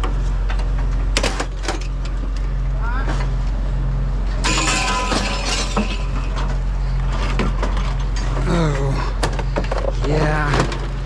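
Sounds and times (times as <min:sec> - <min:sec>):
vehicle engine hum: 0:00.0 - 0:11.0
scrap metal clinking and rattling: 0:04.4 - 0:08.5.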